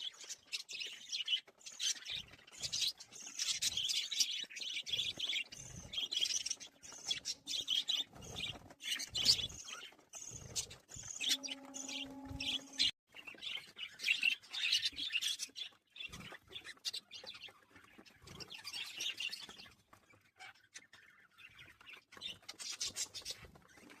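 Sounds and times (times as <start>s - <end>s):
steady low hum: 11.2s - 12.9s.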